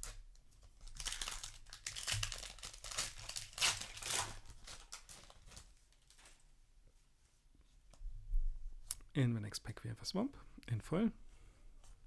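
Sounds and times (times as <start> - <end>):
foil wrapper crinkling and tearing: 0.0 - 6.4.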